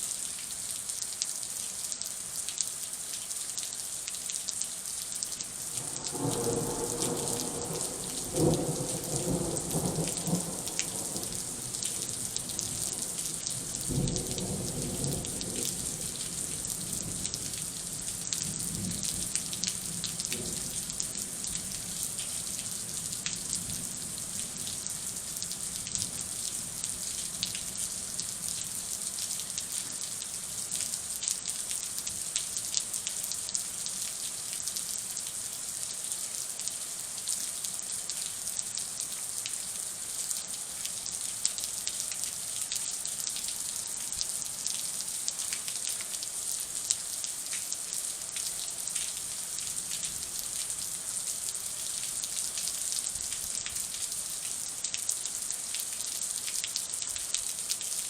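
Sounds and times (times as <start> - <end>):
rain falling steadily: 0.0 - 58.0.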